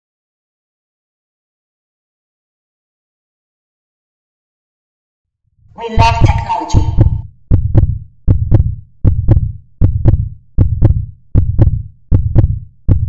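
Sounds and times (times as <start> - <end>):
heartbeat-style thumping beat: 6.0 - 13.0.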